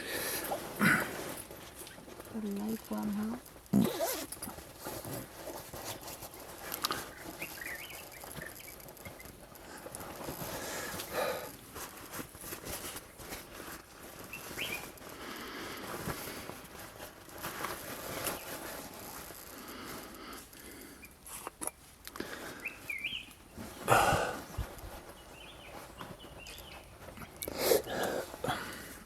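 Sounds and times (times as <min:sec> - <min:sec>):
close rustling and handling noise: 0:00.0 - 0:29.0
bird chirps: 0:22.6 - 0:23.4.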